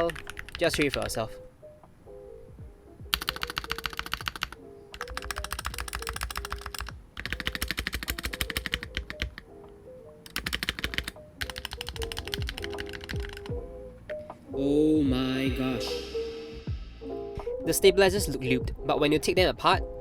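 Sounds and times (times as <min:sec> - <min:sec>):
mechanical keyboard typing: 0:00.0 - 0:01.3, 0:03.1 - 0:09.5, 0:10.2 - 0:13.6
light background music: 0:00.0 - 0:20.0.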